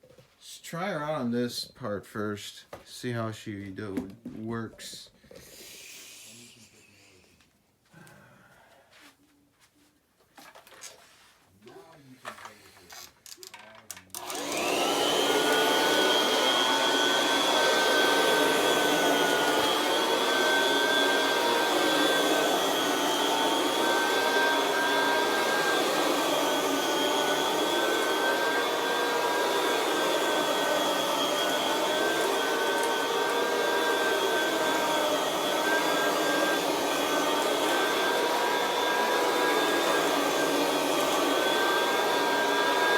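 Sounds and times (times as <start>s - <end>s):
vacuum cleaner motor whine: 14.2s - 42.9s.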